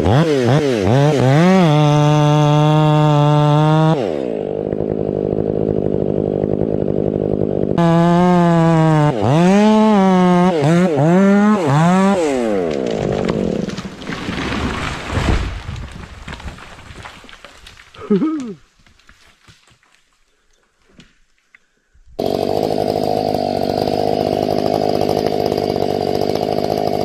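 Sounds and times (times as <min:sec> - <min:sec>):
chainsaw revving: 0:00.0 - 0:15.5, 0:22.2 - 0:27.0.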